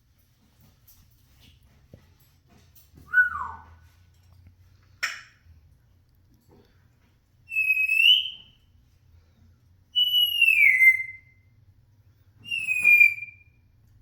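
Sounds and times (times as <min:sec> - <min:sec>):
parrot whistling: 0:03.1 - 0:03.8, 0:07.5 - 0:08.6, 0:10.0 - 0:11.4, 0:12.4 - 0:13.6.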